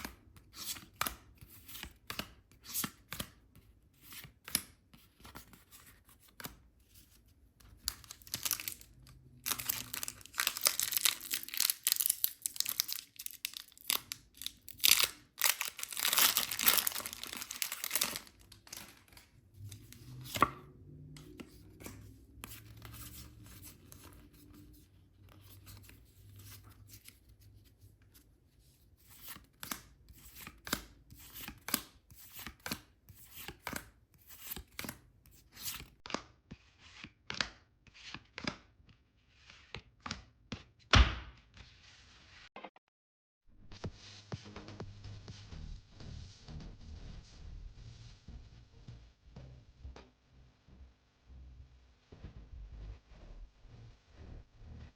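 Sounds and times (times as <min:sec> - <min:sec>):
packaging tearing and rustling: 0:07.9 - 0:20.4.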